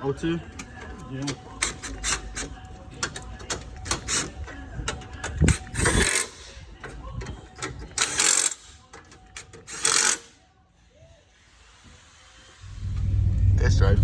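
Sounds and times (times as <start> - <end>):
hand tools clicking and clattering: 0.4 - 10.3.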